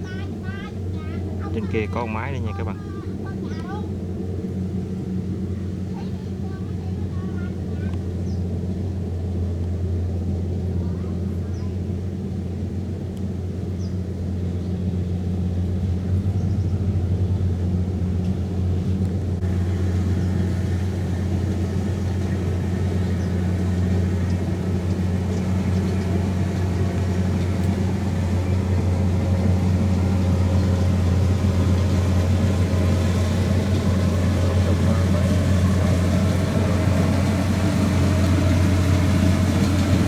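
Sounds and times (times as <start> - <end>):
combine harvester diesel hum: 0.0 - 40.0.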